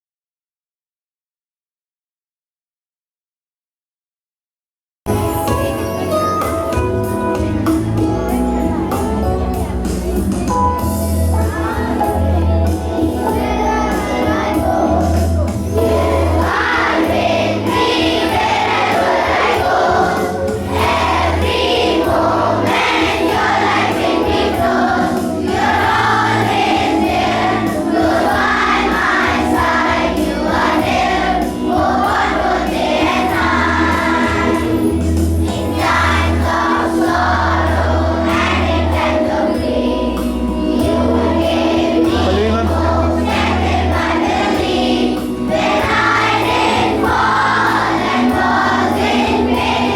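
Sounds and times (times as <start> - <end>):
children singing together: 6.4 - 49.9.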